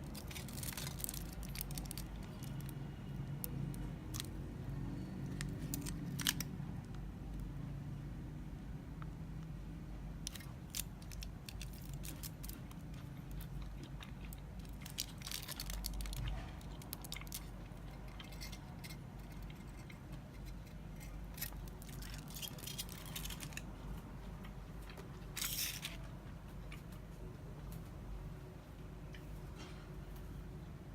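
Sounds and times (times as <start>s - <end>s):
chocolate wrapper crinkling: 0.0s - 2.8s, 3.4s - 4.4s, 5.0s - 7.0s, 10.2s - 19.9s, 21.2s - 23.7s.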